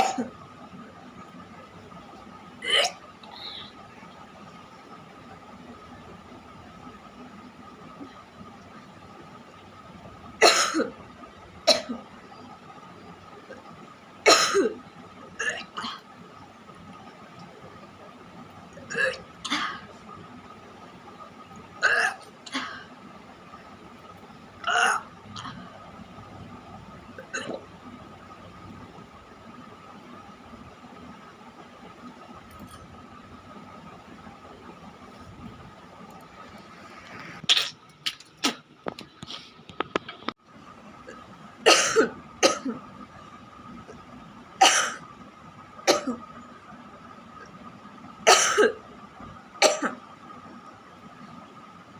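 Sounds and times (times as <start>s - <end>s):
person coughing: 0.0s - 0.4s, 2.6s - 3.6s
person retching: 21.8s - 22.8s, 24.6s - 25.6s, 27.2s - 27.6s, 37.4s - 38.6s.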